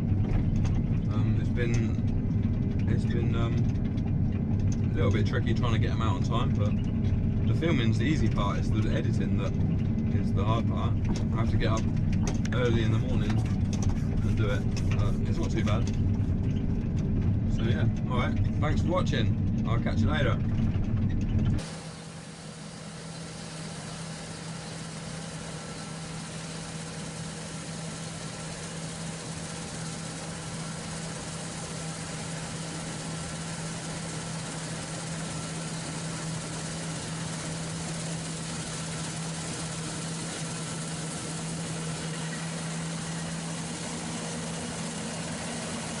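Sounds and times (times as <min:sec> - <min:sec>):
farm machinery engine idling: 0:00.0 - 0:46.0.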